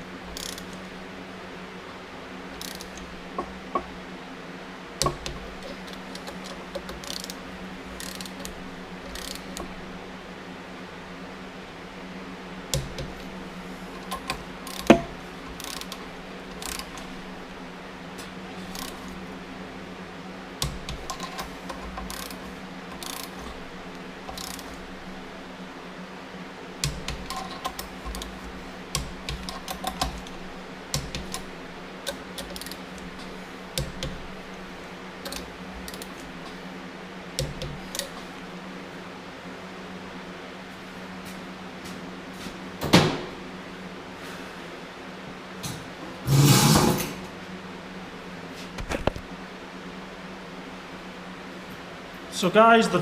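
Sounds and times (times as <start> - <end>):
steady low hum: 0.0 - 53.0
tools and metal parts clicking: 0.3 - 0.8, 2.6 - 3.9, 5.0 - 7.4, 8.0 - 9.7, 13.9 - 17.1, 18.7 - 19.1, 20.6 - 23.7, 24.3 - 24.9, 26.8 - 34.3, 35.2 - 36.6, 37.4 - 38.2.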